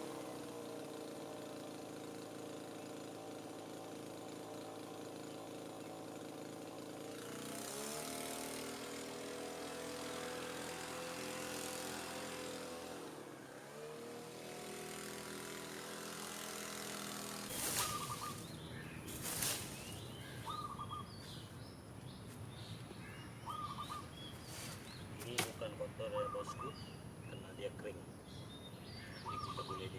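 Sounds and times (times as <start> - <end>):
leaf blower engine running: 0.0 - 29.9
bird chirps: 17.5 - 29.9.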